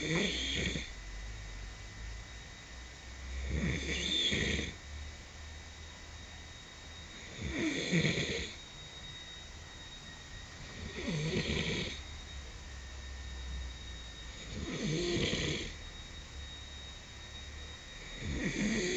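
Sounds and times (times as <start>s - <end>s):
man snoring loudly: 0.0s - 0.9s, 3.4s - 4.8s, 7.4s - 8.6s, 10.8s - 12.0s, 14.4s - 15.8s, 18.2s - 18.9s.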